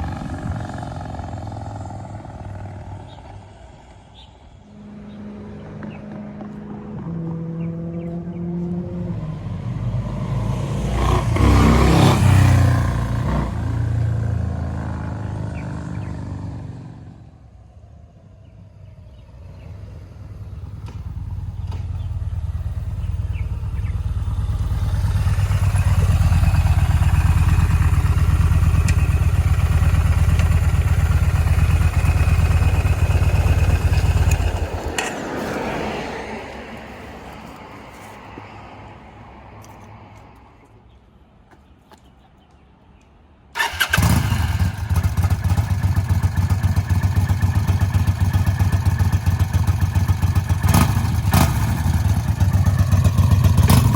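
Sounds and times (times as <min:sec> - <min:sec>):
motorcycle engine revving: 0:00.0 - 0:03.5, 0:04.7 - 0:17.4, 0:19.1 - 0:35.6, 0:43.6 - 0:53.9.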